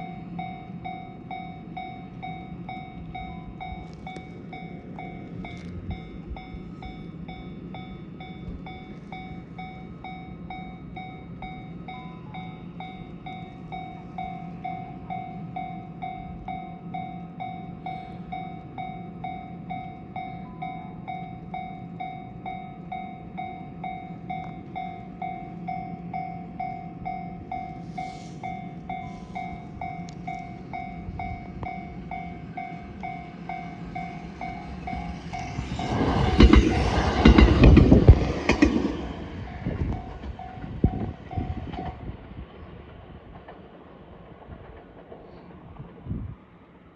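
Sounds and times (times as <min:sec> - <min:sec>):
level crossing alarm ringing: 0:00.0 - 0:36.0
train passing: 0:00.0 - 0:46.9.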